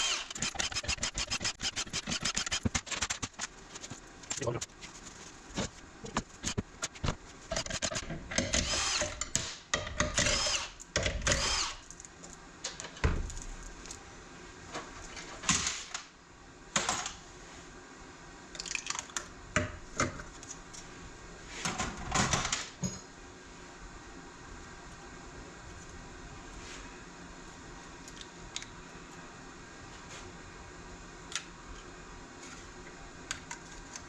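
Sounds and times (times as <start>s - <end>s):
power tool whirring: 0.0s - 3.2s, 7.6s - 9.5s, 10.2s - 11.8s.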